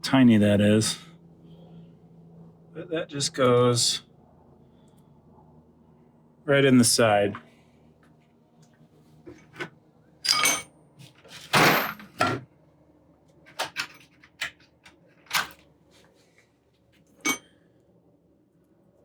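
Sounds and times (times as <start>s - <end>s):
metal tools clinking: 10.2s - 10.7s, 17.2s - 17.5s.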